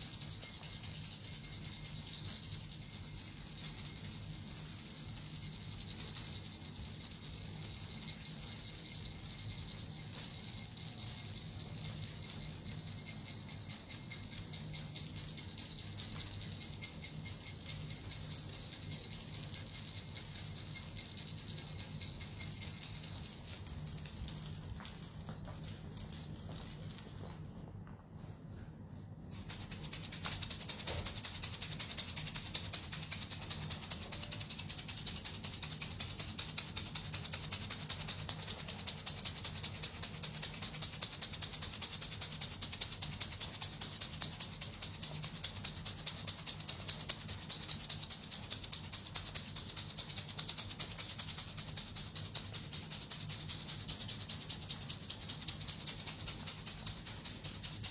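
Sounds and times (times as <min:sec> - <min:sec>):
handheld rattle shaken: 0:00.0 - 0:27.8, 0:29.3 - 0:57.9
small bells jingling: 0:00.0 - 0:27.9.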